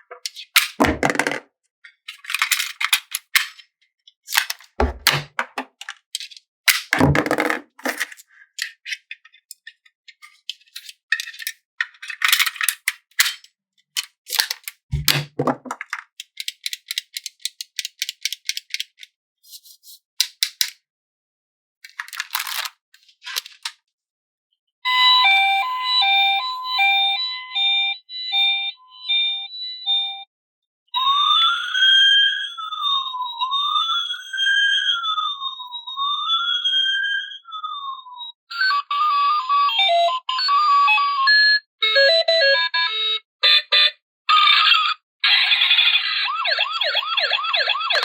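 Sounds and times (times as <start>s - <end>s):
pieces knocking when set down: 0.1s - 1.5s, 4.3s - 8.7s, 14.3s - 16.1s
plastic toys clicking and rattling: 0.1s - 19.1s, 20.2s - 20.8s, 21.8s - 23.8s
packaging crinkling: 21.9s - 23.7s.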